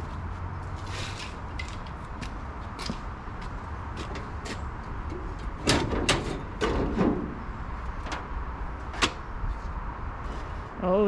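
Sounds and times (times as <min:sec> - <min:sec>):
metal clunks and knocks: 0:04.0 - 0:08.3.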